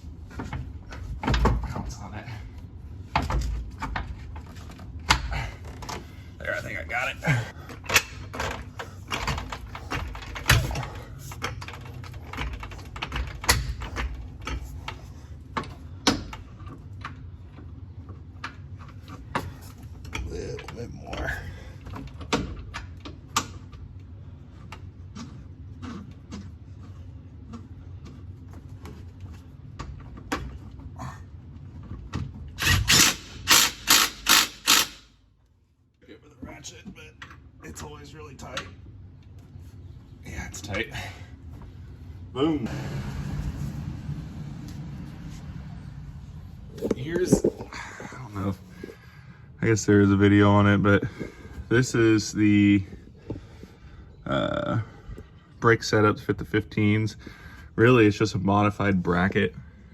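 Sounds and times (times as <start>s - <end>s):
power tool bursts: 32.6s - 35.1s.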